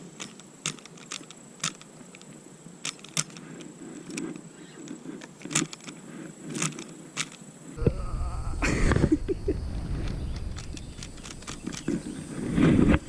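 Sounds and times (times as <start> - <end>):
fishing gear clicks and rattles: 0.0 - 7.5, 10.0 - 12.3
faint low rustling: 7.8 - 13.0.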